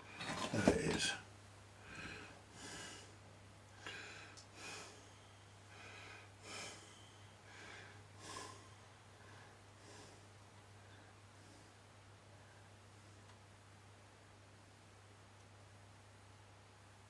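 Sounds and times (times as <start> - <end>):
steady low hum: 0.0 - 17.0
soft breathing: 1.8 - 13.2.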